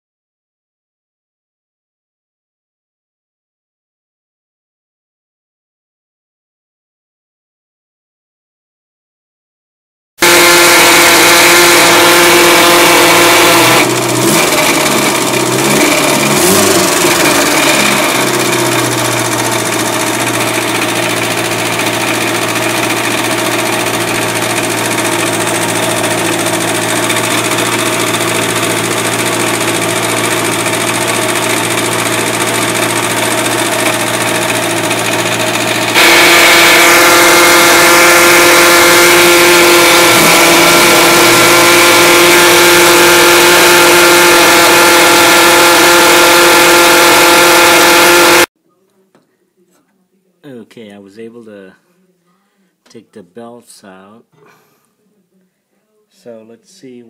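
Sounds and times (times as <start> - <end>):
car engine idling: 10.2 - 48.4
generator bearing noise: 10.2 - 48.5.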